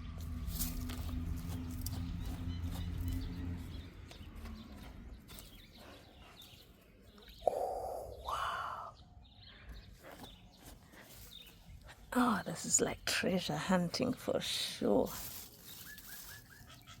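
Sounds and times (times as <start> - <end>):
bird harsh calls: 4.6 - 11.8, 15.6 - 17.0.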